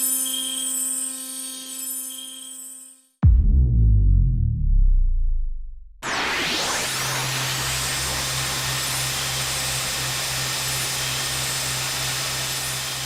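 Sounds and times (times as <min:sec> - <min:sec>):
low hum: 0:03.2 - 0:09.0
dense rushing whir: 0:03.2 - 0:09.7.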